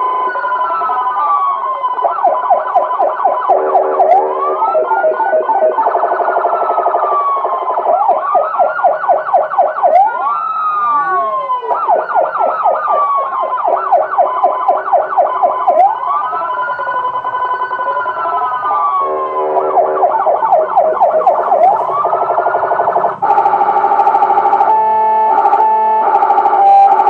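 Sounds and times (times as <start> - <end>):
electronic siren wailing and yelping: 0.0 - 27.0.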